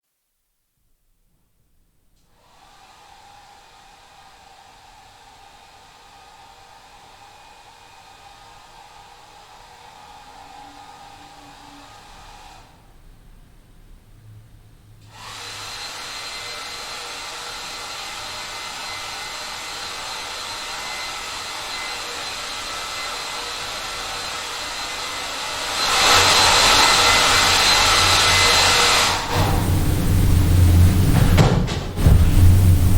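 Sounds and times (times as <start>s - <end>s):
muffled hair dryer running: 2.4s - 12.8s, 15.1s - 32.9s.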